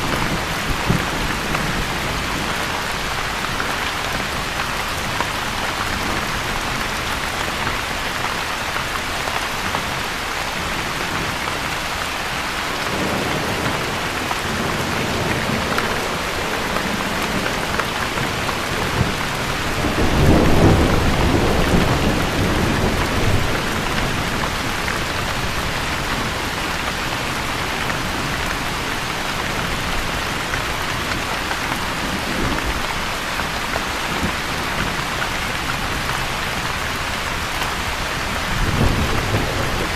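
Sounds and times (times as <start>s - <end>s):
heavy rain: 0.0s - 39.9s
rolling thunder: 12.9s - 26.3s.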